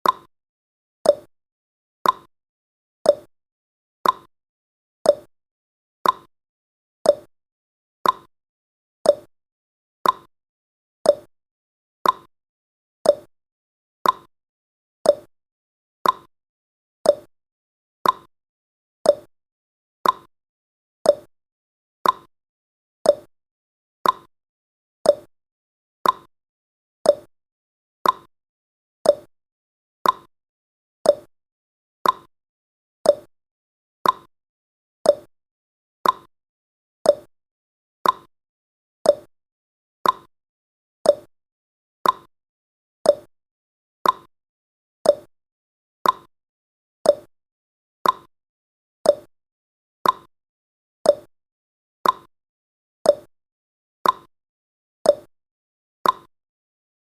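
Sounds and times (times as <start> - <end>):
clock ticking: 32.0 - 32.3, 40.0 - 40.3, 46.0 - 46.3, 48.0 - 48.3, 56.0 - 56.3.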